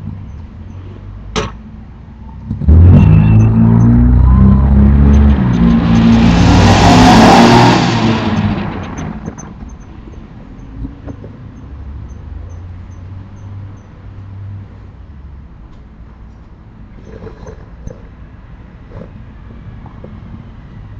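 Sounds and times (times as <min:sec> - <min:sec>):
car passing by: 0:02.7 - 0:09.2.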